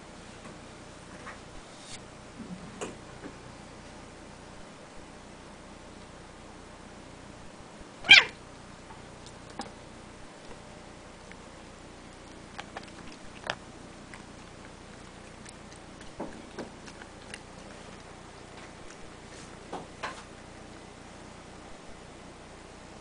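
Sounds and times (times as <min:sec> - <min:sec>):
cat meowing: 0:08.0 - 0:08.4.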